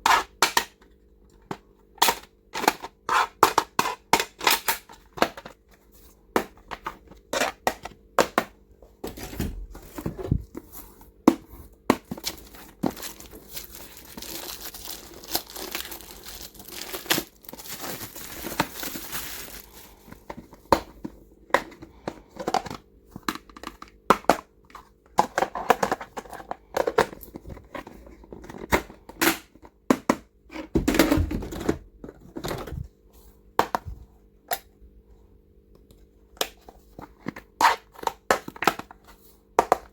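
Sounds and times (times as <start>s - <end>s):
plastic wrapping crinkling and tearing: 12.1s - 20.2s.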